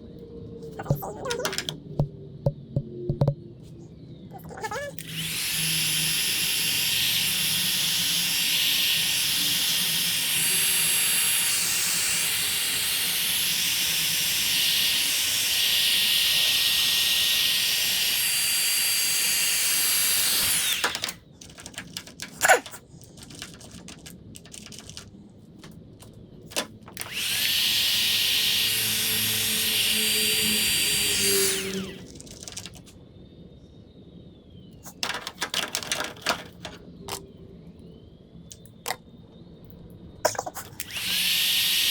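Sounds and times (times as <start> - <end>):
heat gun whirring hiss: 4.4 - 25.1, 26.5 - 32.9, 34.8 - 36.8, 40.3 - 41.9
sharp clicks: 4.5 - 32.9, 34.8 - 37.2.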